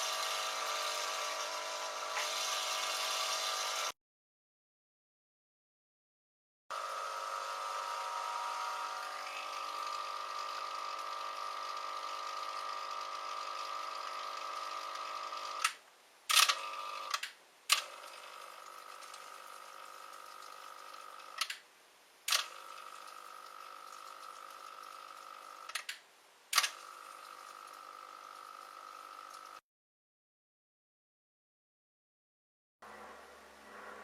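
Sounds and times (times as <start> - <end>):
filter motor whining: 0.0 - 3.9, 6.7 - 15.6.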